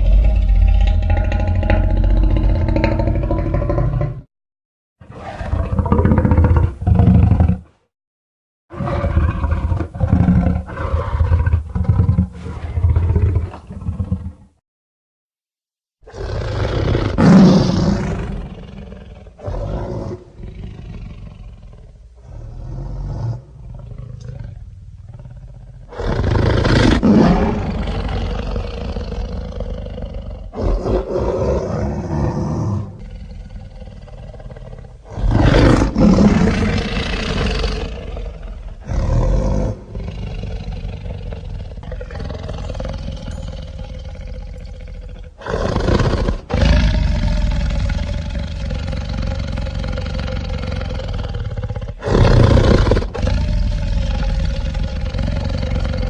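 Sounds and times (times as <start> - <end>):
deep monster roars: 0.0 - 4.3, 16.1 - 56.0
low growls and rumbles: 0.0 - 4.3, 27.0 - 45.4, 46.6 - 56.0.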